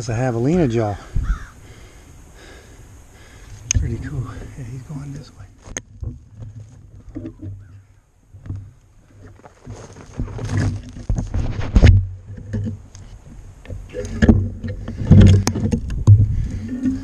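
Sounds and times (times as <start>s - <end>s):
footsteps through undergrowth: 9.1s - 11.8s.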